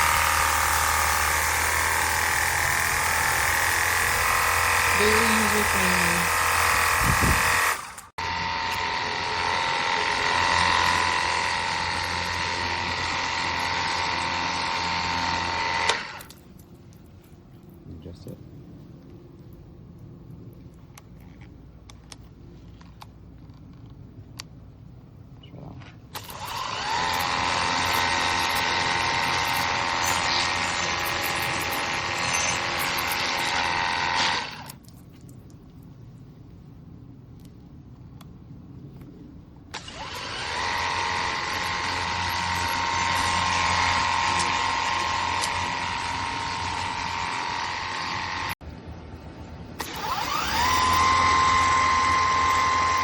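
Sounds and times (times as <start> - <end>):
pressure washer pump whine: 0.0 - 16.3, 26.2 - 34.8, 39.7 - 53.0.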